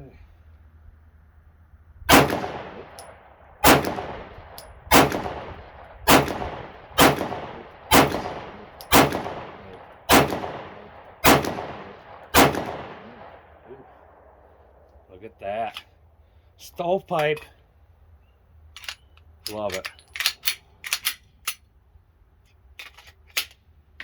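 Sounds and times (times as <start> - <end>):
pistol shots echoing: 2.1 - 14.5.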